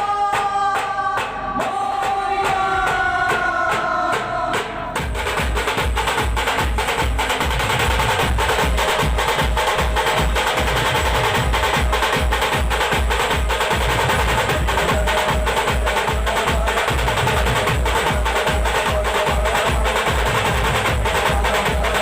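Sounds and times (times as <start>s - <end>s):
heavy drum beat: 0.0s - 22.0s
deep bass thumps: 5.0s - 15.1s.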